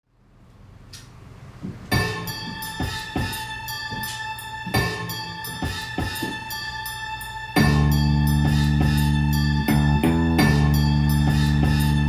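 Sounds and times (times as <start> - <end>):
drum hits: 1.9 - 4.1
music through car speakers: 1.9 - 12.0.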